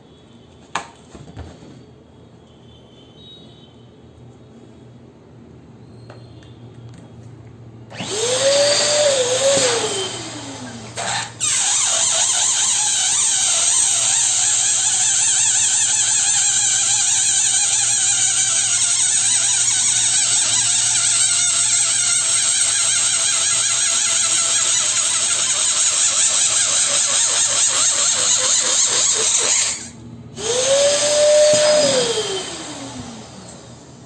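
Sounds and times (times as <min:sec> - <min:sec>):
electric balloon pump hissing: 0:10.9 - 0:33.6.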